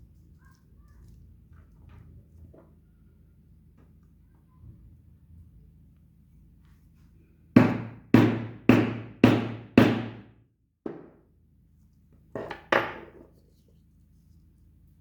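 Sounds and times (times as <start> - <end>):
hammer strikes on leather: 7.6 - 10.3.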